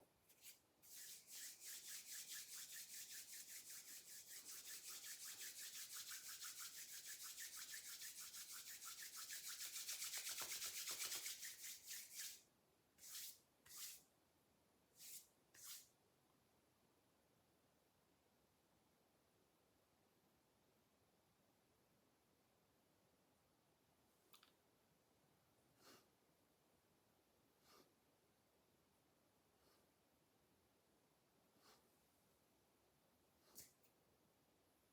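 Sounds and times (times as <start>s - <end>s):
palms rubbing together: 0.3s - 12.4s.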